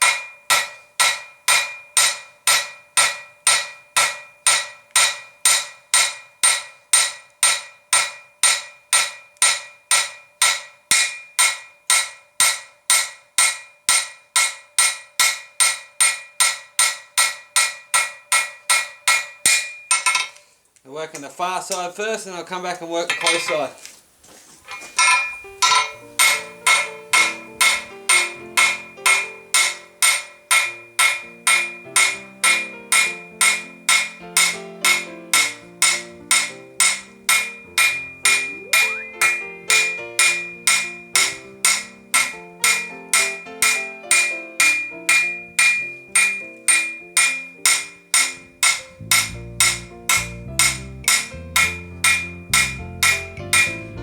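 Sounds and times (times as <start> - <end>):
hammer striking steel on anvil: 0.0 - 20.4, 23.1 - 23.6, 25.0 - 54.0
background music: 25.4 - 54.0.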